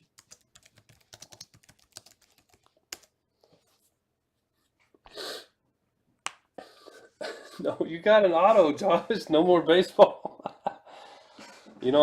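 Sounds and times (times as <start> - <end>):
keyboard typing: 0.0 - 3.1.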